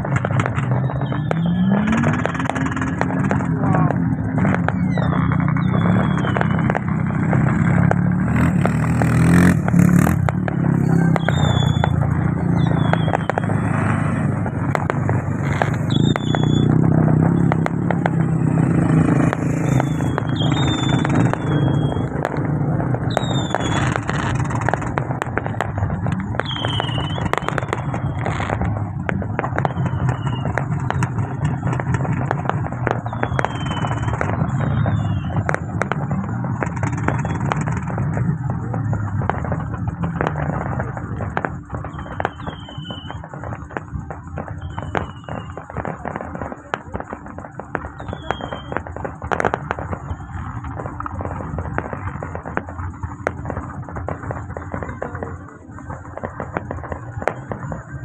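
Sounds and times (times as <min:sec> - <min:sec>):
vehicle engines running: 0:00.0 - 0:58.0.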